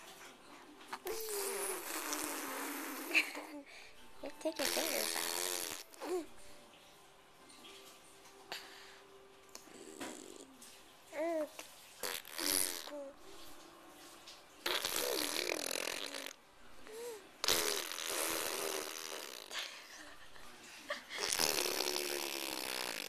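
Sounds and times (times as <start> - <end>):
child blowing raspberries: 1.0 - 3.3, 12.0 - 13.1, 14.6 - 16.4, 17.4 - 19.6.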